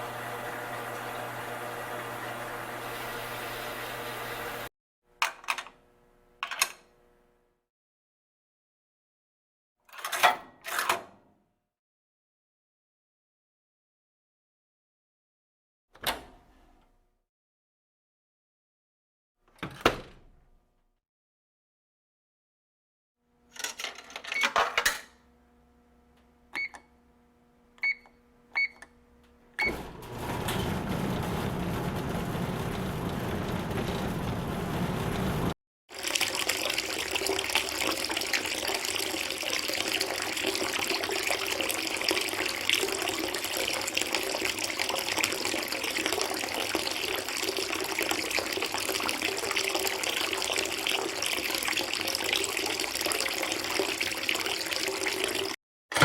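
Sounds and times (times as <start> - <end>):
water running: 0.0 - 4.7, 29.7 - 55.6.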